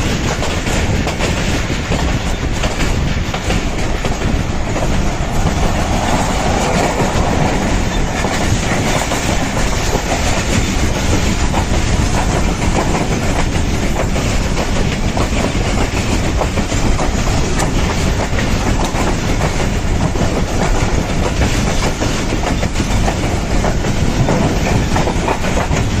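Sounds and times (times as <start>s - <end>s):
quick clicks of train wheels: 0.0s - 26.0s
train wheels rumbling on rails: 0.0s - 26.0s.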